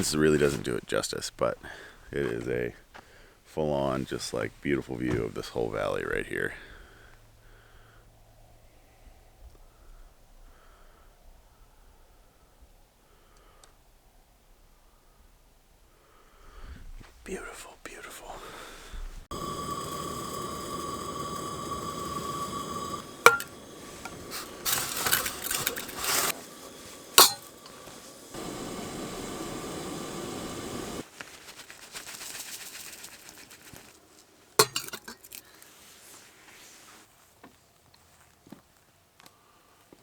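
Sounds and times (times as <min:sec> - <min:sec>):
cookware clinking and knocking: 0:19.6 - 0:26.3, 0:27.2 - 0:27.8, 0:34.6 - 0:35.2
sharp metallic strikes: 0:27.2 - 0:27.6.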